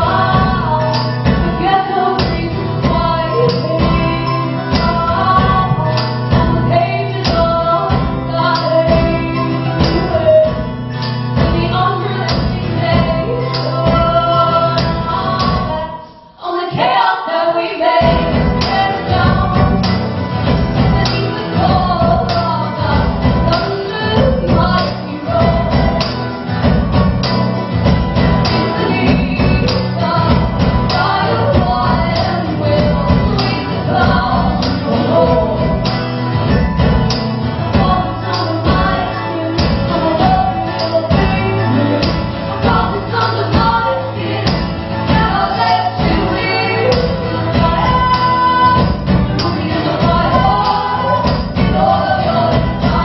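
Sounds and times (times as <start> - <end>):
live band playing: 0.0 - 53.0
person singing: 28.3 - 37.0, 37.6 - 53.0.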